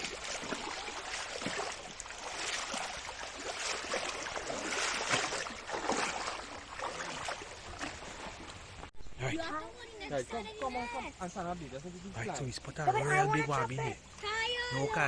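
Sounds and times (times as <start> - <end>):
water sloshing and splashing: 0.0 - 8.9
river current rushing: 0.0 - 9.4.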